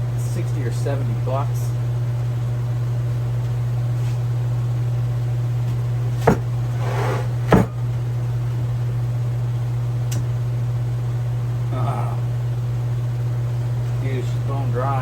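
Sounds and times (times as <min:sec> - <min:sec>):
steady low hum: 0:00.0 - 0:15.0
scrape on bench: 0:06.2 - 0:07.7.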